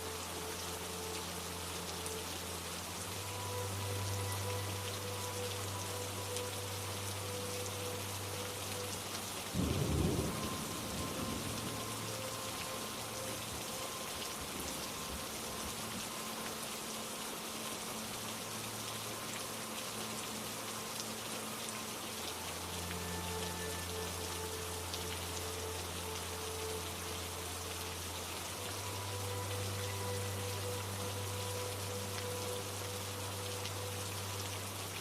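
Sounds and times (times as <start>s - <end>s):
steady rain falling: 0.0s - 35.0s
thunder rumble: 9.6s - 12.1s.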